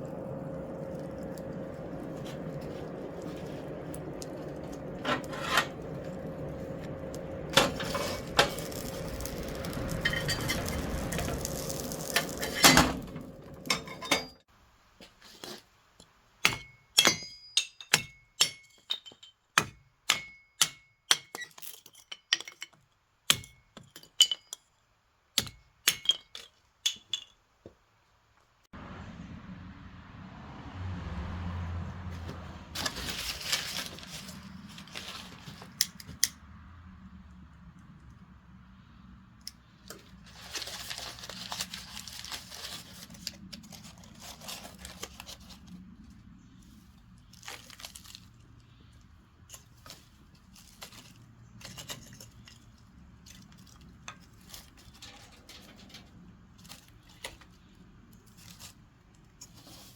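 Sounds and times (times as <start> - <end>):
low hum: 0.0 - 14.3
hammer striking steel on anvil: 16.4 - 18.8, 19.6 - 21.3.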